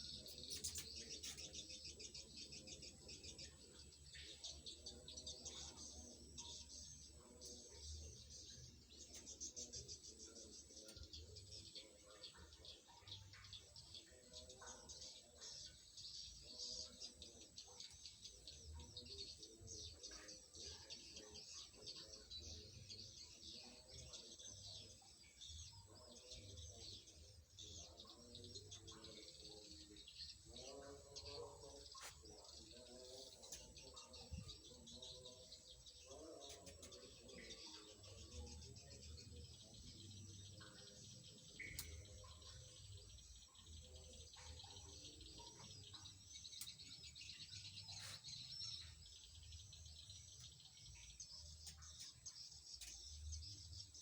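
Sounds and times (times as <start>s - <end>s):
small birds chirping faintly: 0.0s - 54.0s.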